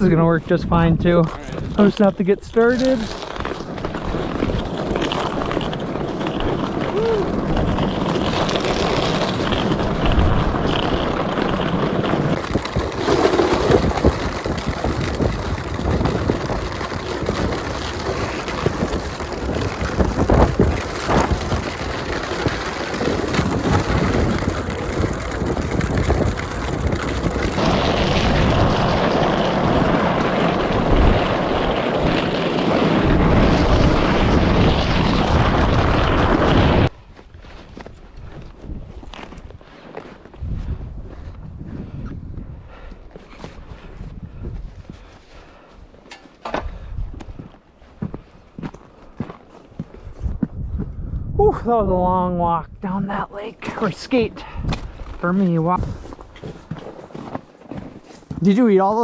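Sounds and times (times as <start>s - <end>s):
wind rushing over microphone: 0.0s - 39.7s, 40.3s - 46.0s, 46.6s - 59.0s
skates scraping on ice: 1.1s - 41.8s, 53.0s - 59.0s.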